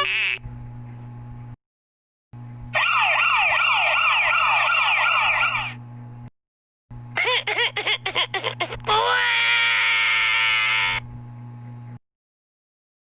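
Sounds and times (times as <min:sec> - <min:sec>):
electronic siren wail: 0:02.8 - 0:05.8.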